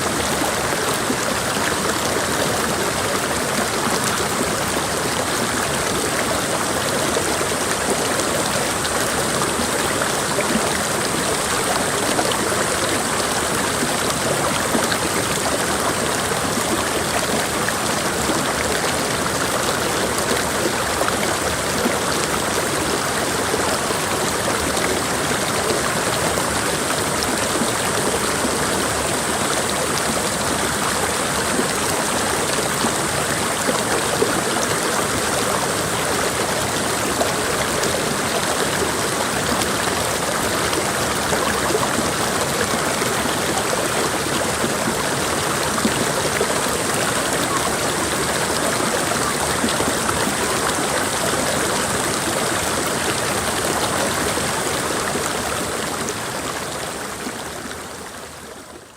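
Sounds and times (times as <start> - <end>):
stream rushing over rocks: 0.0 - 58.9.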